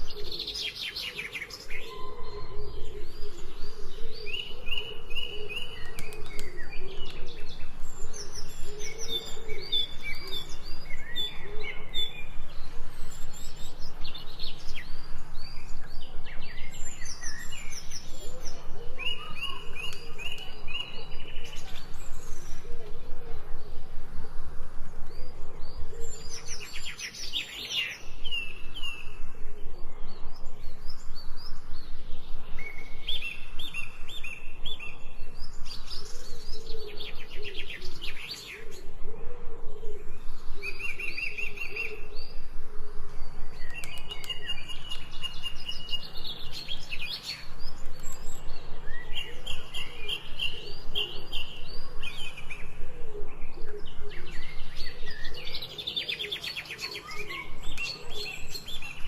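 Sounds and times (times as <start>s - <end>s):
wild birds singing and chirping: 0.0s - 59.0s.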